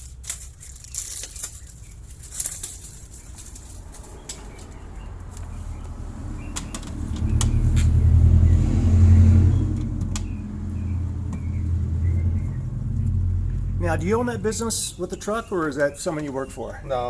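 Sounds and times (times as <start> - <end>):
vehicle engine rumbling past: 1.6 - 16.9
sharp clicks: 4.2 - 8.0, 9.7 - 10.4.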